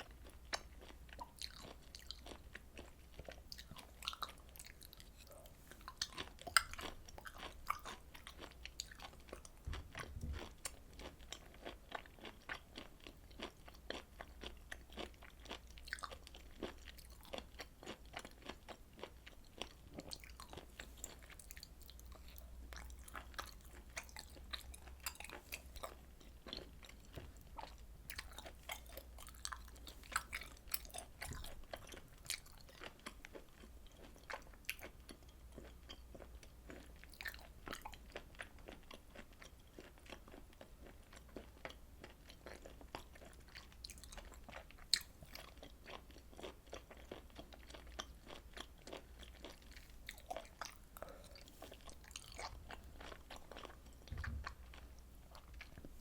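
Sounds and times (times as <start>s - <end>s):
close-miked chewing: 0.0s - 56.0s
mouth and teeth clicks: 3.6s - 10.8s.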